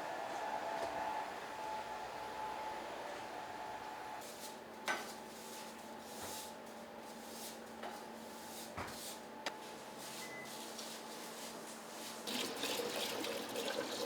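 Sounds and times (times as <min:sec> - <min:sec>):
kitchen equipment humming: 0:12.3 - 0:14.0.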